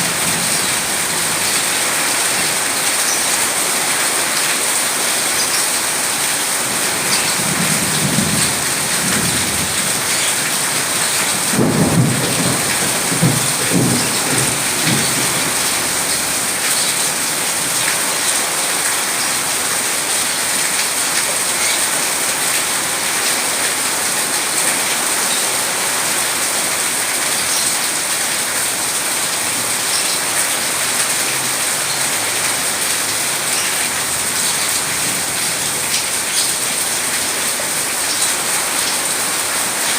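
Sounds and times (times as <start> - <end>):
steady rain falling: 0.0 - 39.9
thunder rumbling: 11.0 - 16.1.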